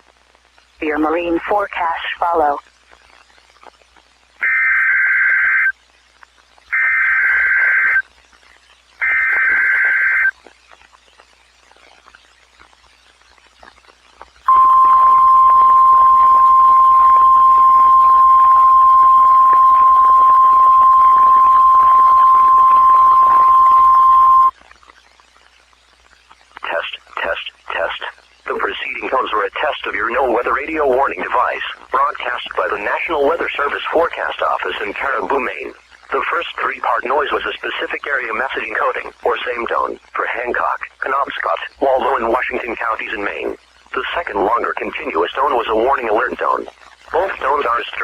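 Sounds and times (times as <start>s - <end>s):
buzzy digital data bursts: 6.6s - 24.5s.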